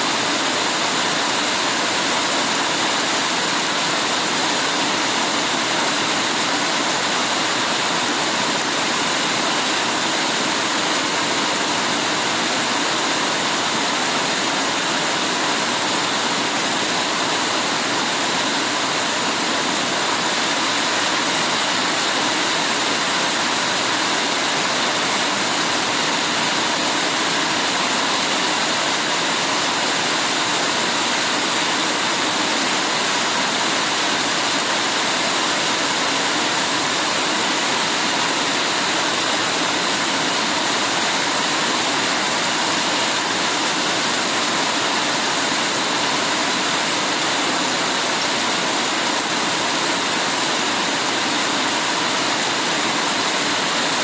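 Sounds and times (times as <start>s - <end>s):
heavy rain pouring: 0.0s - 54.0s.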